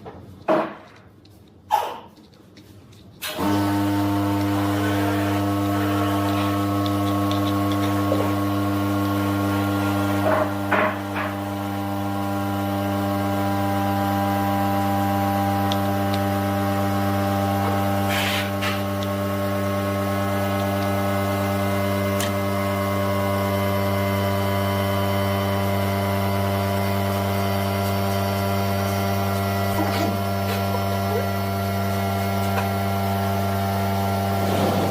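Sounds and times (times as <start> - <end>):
lathe motor humming: 3.2 - 34.9
scraping rasp: 18.0 - 18.9.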